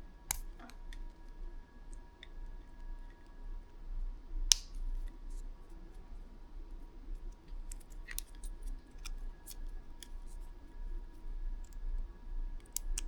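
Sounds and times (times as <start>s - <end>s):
light clicks and snips: 4.5s - 5.4s, 7.2s - 10.6s, 12.6s - 13.0s.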